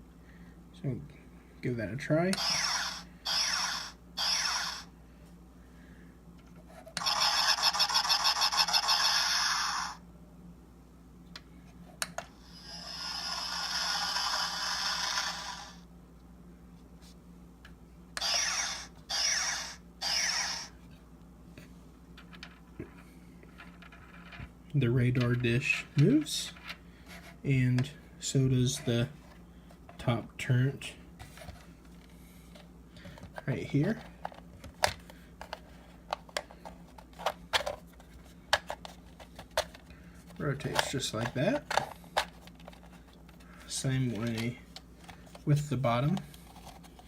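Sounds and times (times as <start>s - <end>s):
toy sound effect: 2.4s - 4.9s, 7.0s - 10.0s, 12.5s - 15.8s, 18.2s - 20.8s.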